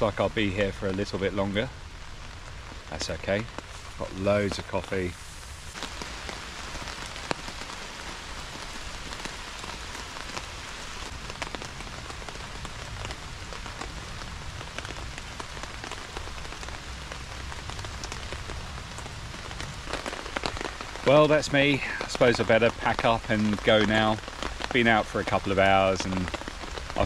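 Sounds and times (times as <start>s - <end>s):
heavy rain on a tarp: 0.0s - 27.0s.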